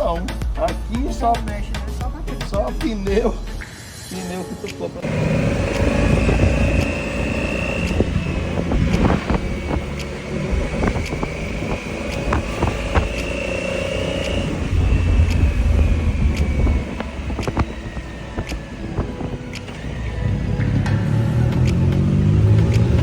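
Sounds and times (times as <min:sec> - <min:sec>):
motorcycle engine accelerating: 0:05.0 - 0:23.0.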